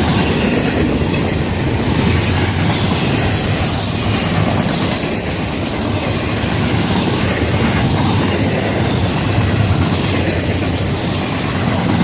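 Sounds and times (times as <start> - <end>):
freight train rolling past: 0.0 - 12.0.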